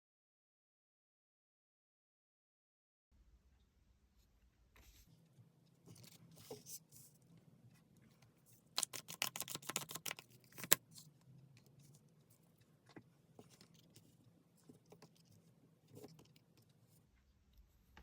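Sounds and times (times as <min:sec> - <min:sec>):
cards being shuffled: 0:08.8 - 0:10.8.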